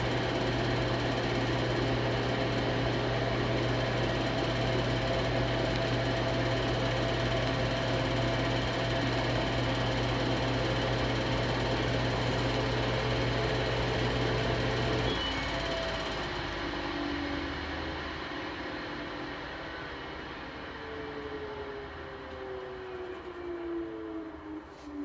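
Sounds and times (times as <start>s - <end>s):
washing machine drum spinning: 0.0s - 15.1s.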